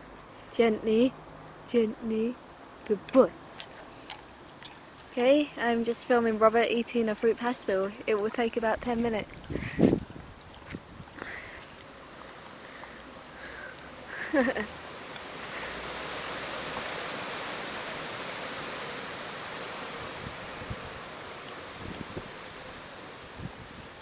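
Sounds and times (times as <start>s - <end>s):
wind blowing over microphone: 8.5s - 11.4s, 15.5s - 24.0s.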